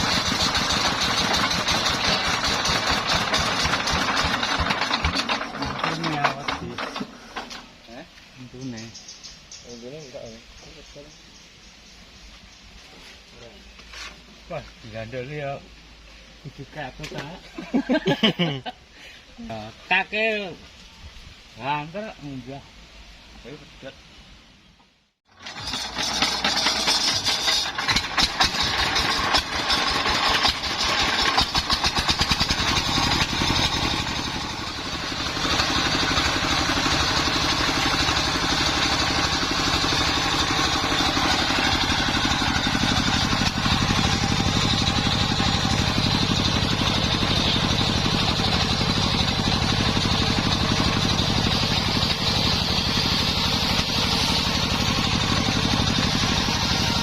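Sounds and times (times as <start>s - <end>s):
engine driving circular saw: 0.0s - 8.9s, 25.3s - 57.0s.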